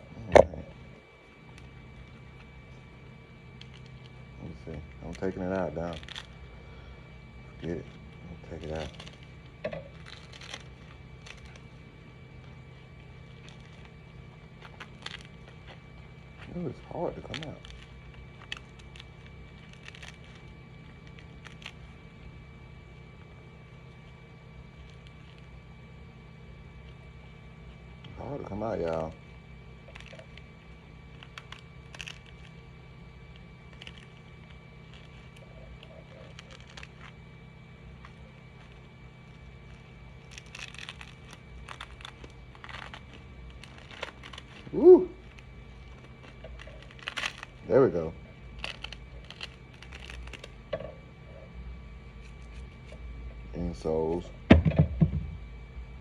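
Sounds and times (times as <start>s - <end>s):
plastic print peeling crackles: 0.0s - 56.0s
steady low hum: 0.0s - 56.0s
plastic clicks and rustles: 7.7s - 11.7s, 13.2s - 22.0s, 29.8s - 32.6s, 33.2s - 37.2s, 38.0s - 47.6s, 48.5s - 51.0s.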